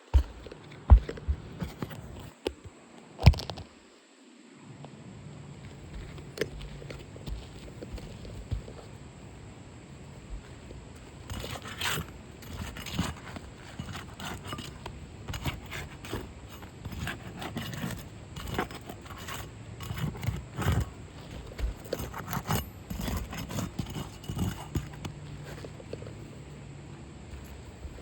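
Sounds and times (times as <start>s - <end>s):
scraping and clinking on roof: 11.3s - 25.1s.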